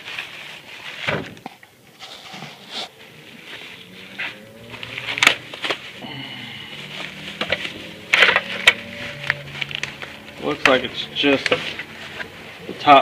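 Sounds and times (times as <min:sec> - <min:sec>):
styrofoam packing cracking: 0:00.0 - 0:06.0, 0:06.9 - 0:11.7
dirt bike engines droning: 0:02.9 - 0:13.0.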